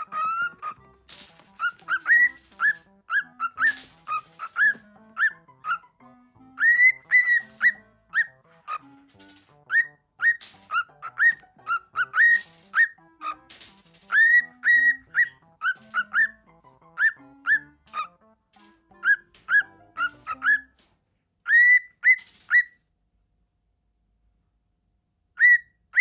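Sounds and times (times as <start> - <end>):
cockatiel whistling a tune: 0.0 - 0.9, 1.6 - 5.9, 6.5 - 8.9, 9.7 - 13.4, 14.1 - 18.1, 19.0 - 20.7, 21.5 - 22.8, 25.4 - 26.0.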